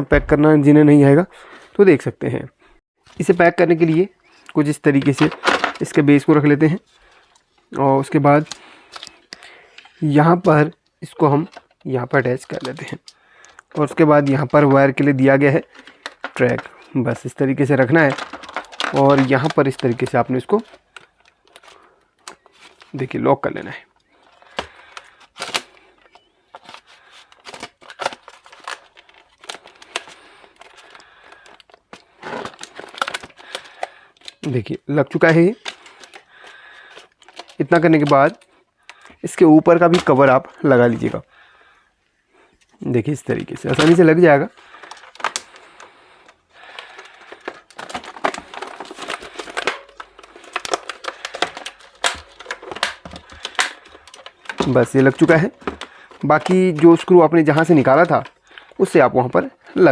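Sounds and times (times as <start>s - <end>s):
plastic parts clicking and tapping: 3.1s - 23.1s, 23.9s - 41.2s, 42.6s - 59.9s
plastic keyboard cover clicking: 18.0s - 22.5s, 27.4s - 34.4s, 44.8s - 45.5s, 46.8s - 56.9s.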